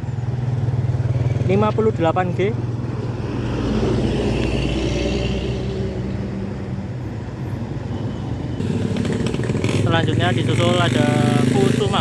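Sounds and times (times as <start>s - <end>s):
bus engine running: 8.6s - 12.0s.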